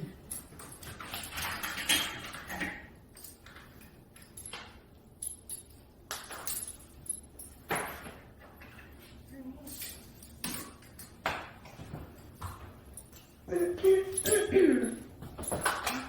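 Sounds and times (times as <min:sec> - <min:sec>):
metal handcuffs and chain jangling: 0:00.0 - 0:16.0
sharp clicks of handcuffs: 0:13.0 - 0:16.0.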